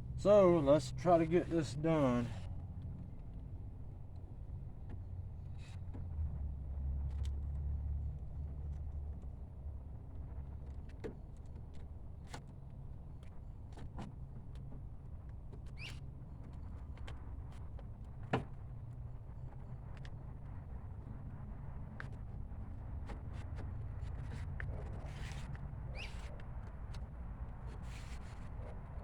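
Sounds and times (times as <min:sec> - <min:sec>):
low steady rumble: 0:00.0 - 0:29.0.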